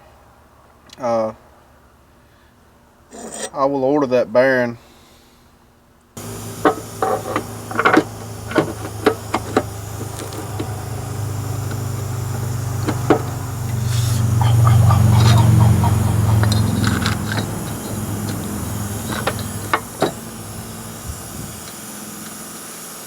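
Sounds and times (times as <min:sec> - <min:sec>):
sharp clicks and knocks: 0:06.2 - 0:20.8
engine humming: 0:06.2 - 0:23.0.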